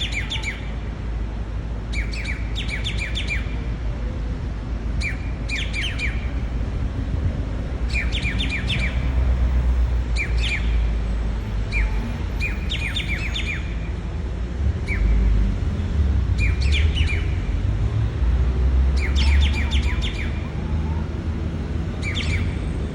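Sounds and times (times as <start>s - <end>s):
bird chirping calls: 0.0s - 0.7s, 1.9s - 3.6s, 5.0s - 6.4s, 7.8s - 13.9s, 16.3s - 17.6s, 19.0s - 22.8s.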